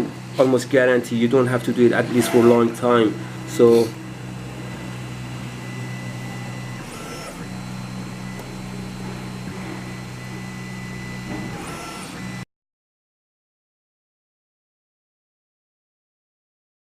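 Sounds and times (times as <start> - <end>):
printer high whir: 0.0 - 12.5
three d printer hum: 0.0 - 12.5.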